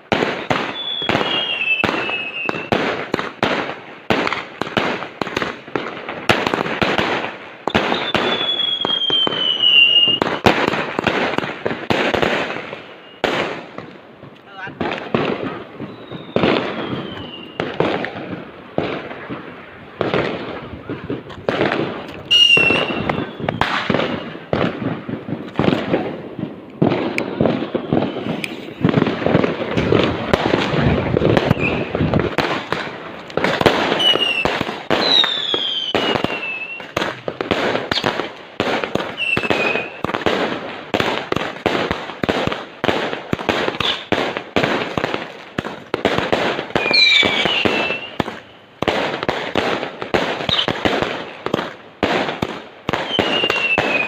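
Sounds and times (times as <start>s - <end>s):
fireworks bangs: 0.0s - 54.0s
falling firework whistles: 0.1s - 3.0s, 7.6s - 10.6s, 12.6s - 13.6s, 15.8s - 18.2s, 22.2s - 24.6s, 27.0s - 32.2s, 33.5s - 38.2s, 39.0s - 40.3s, 43.7s - 44.2s, 46.7s - 48.7s, 50.4s - 50.9s, 52.9s - 54.0s.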